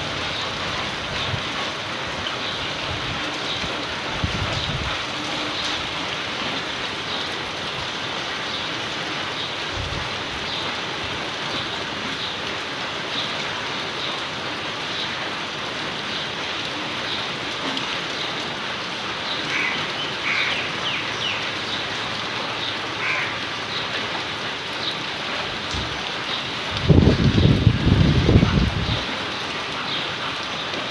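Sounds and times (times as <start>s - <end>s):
heavy rain falling: 0.0s - 30.9s.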